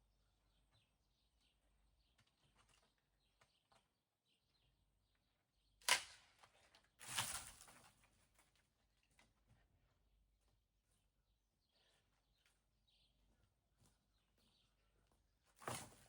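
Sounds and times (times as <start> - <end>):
sharp crack: 5.8 - 6.3.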